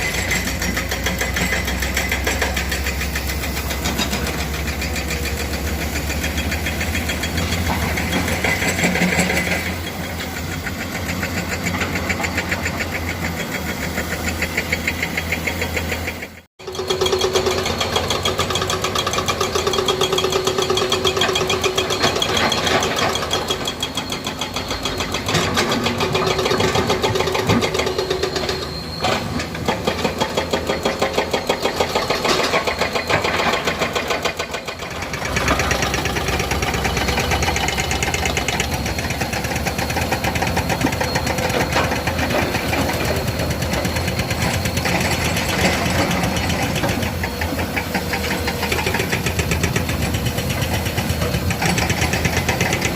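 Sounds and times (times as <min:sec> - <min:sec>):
excavator diesel engine running: 0:00.0 - 0:52.9.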